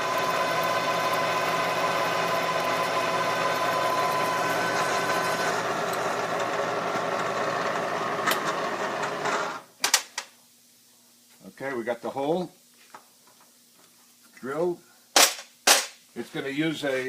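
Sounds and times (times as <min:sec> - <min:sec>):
milling machine whining: 0:00.0 - 0:09.6.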